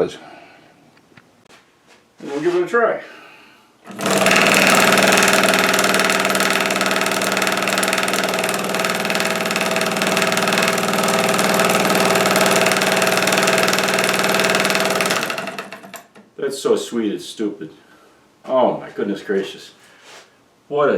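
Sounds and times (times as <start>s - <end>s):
scroll saw running: 3.9s - 16.2s.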